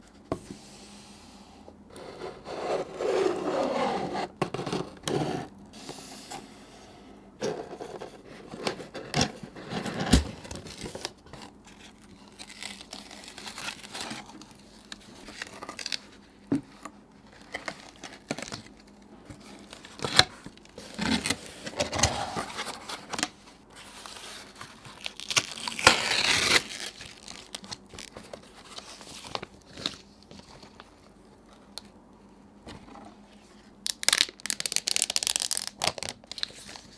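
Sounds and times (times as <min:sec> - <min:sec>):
cardboard packaging tearing and scraping: 0:07.4 - 0:16.0, 0:19.4 - 0:30.0.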